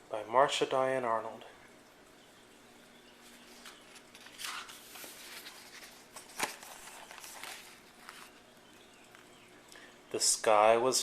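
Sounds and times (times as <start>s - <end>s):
paper book pages rustling: 3.2s - 8.5s.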